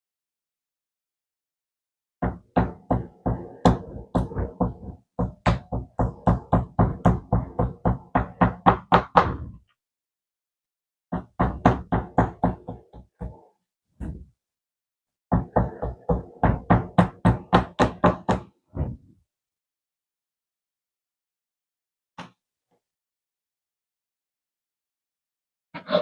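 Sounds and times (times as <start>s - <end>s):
hand pounding meat on cutting board: 2.2s - 9.5s, 11.2s - 13.4s, 15.4s - 18.5s.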